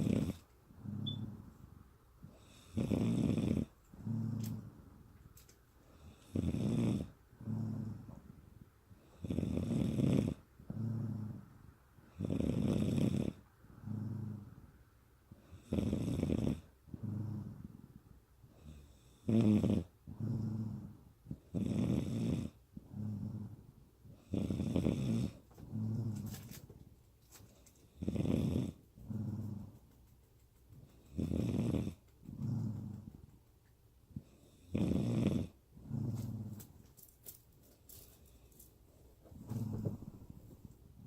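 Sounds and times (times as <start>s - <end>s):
woman snoring: 0.0s - 1.4s, 2.4s - 4.7s, 6.0s - 8.1s, 9.1s - 11.4s, 12.2s - 14.5s, 15.5s - 17.7s, 18.6s - 20.9s, 21.5s - 23.5s, 24.3s - 26.3s, 28.0s - 28.8s, 31.2s - 32.0s, 34.6s - 36.5s.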